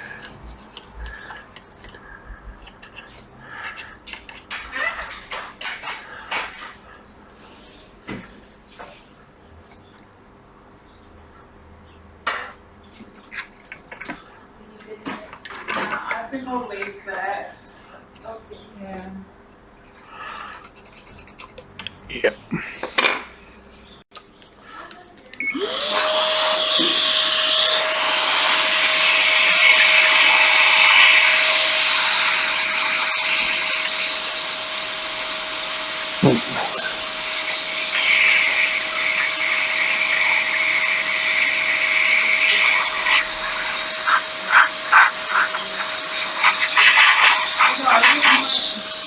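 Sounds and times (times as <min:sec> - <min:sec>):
small electric motor whine: 0:25.4 - 0:49.0.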